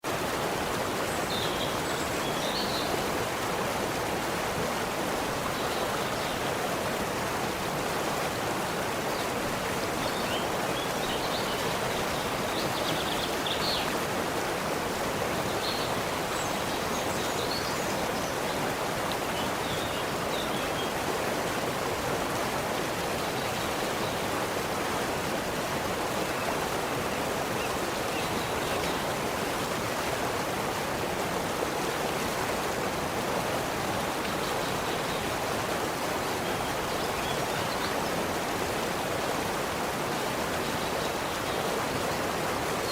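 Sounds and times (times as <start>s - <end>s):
stream rushing water: 0.0s - 42.9s.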